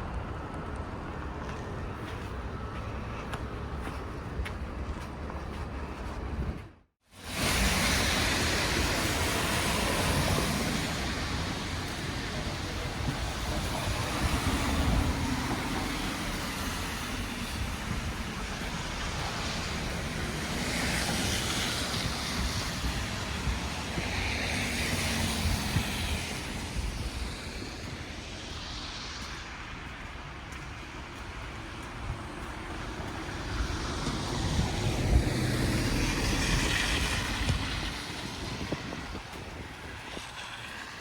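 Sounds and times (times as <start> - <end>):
traffic noise with low rumbling: 0.0 - 41.0
wind rushing: 7.2 - 29.9, 33.2 - 41.0.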